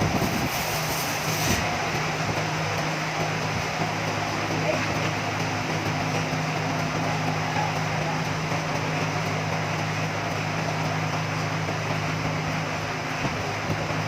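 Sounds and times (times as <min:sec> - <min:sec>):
machinery hiss: 0:00.0 - 0:02.1
sawmill machinery hum: 0:00.0 - 0:14.0.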